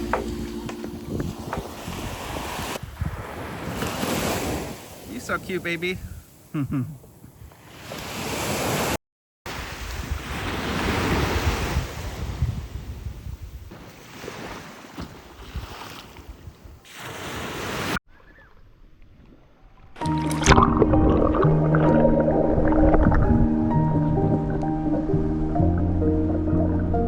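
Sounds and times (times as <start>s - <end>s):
wind buffeting microphone: 0.7s - 4.8s, 9.8s - 13.8s, 20.8s - 27.0s
ocean waves washing on shore: 1.3s - 5.8s.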